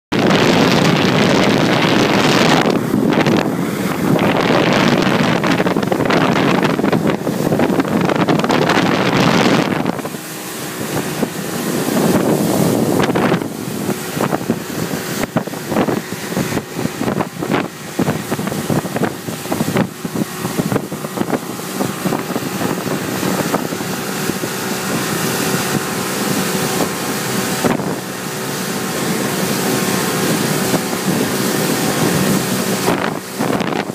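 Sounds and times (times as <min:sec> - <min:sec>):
motorboat engine humming: 0:00.1 - 0:33.9
wind buffeting the microphone: 0:00.1 - 0:33.9.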